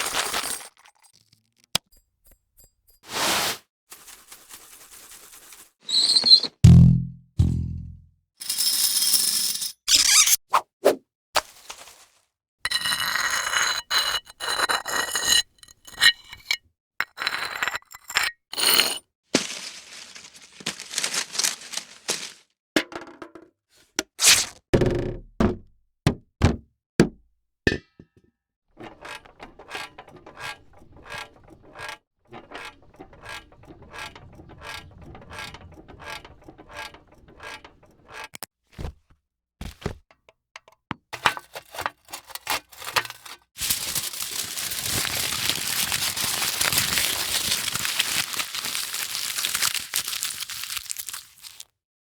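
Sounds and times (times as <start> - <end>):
continuous crackling rustle: 3.9 - 5.8, 19.4 - 22.5, 43.6 - 51.7.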